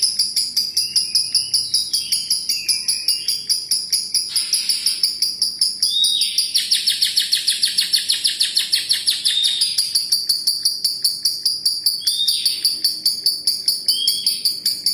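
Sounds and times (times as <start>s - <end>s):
steady high ticking: 0.0s - 6.6s, 9.6s - 14.9s
lovebird chattering trill: 0.0s - 14.9s
bird harsh call: 4.3s - 5.2s.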